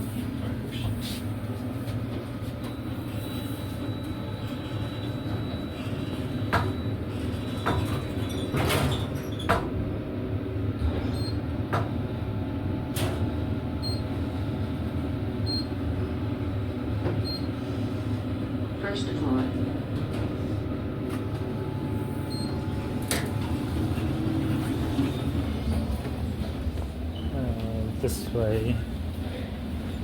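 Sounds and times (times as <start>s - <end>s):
elevator hum and rumble: 0.0s - 30.0s.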